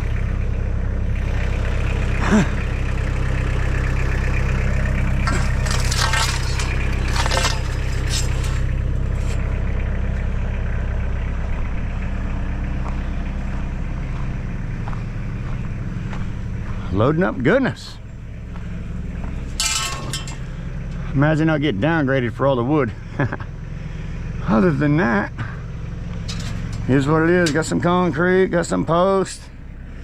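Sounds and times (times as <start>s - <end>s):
tractor engine idling: 0.0s - 30.0s
scrap metal clanking: 4.4s - 10.3s, 18.6s - 21.1s, 26.0s - 28.2s.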